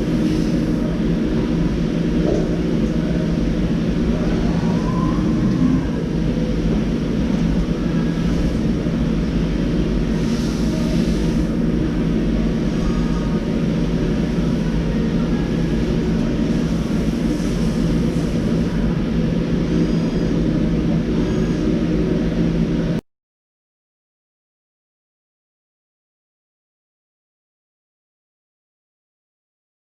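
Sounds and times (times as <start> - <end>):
machine mechanical hum: 0.0 - 23.0.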